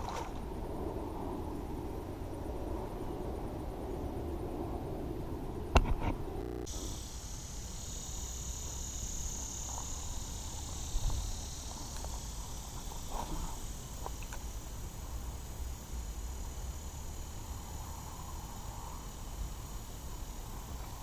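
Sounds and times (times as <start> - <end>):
insects droning: 0.0 - 21.0.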